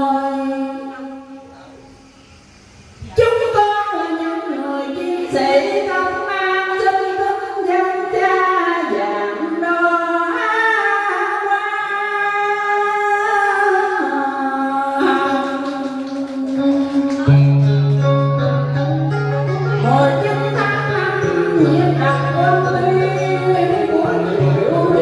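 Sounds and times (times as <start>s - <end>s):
person singing slow long notes: 9.0s - 25.0s.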